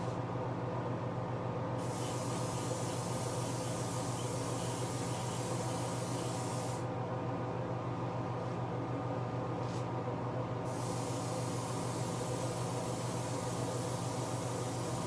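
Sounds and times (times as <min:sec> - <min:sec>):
aerosol can spraying: 0:01.8 - 0:06.8, 0:10.7 - 0:15.0.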